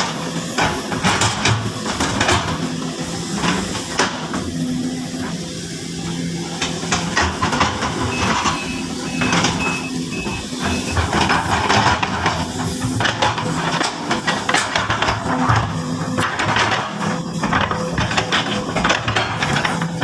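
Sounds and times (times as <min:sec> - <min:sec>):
excavator engine running: 0:00.0 - 0:20.0
excavator work knocks: 0:06.9 - 0:19.8.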